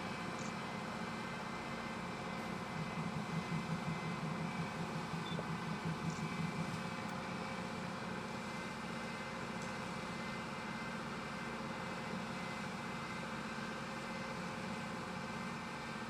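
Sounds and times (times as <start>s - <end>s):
woodworking machine humming: 0.0s - 8.4s.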